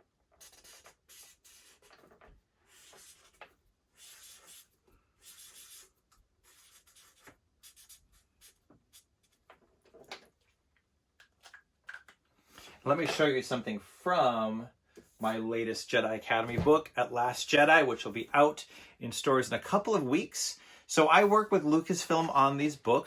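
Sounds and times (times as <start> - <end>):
pen scratching on paper: 0.4 - 9.4.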